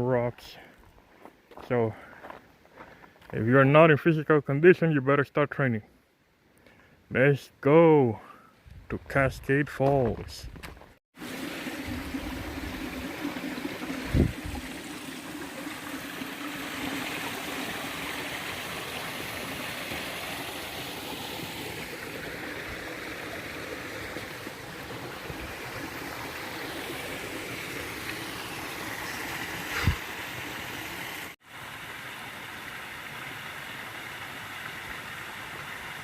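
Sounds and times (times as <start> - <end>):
creek water rushing: 11.2 - 36.0.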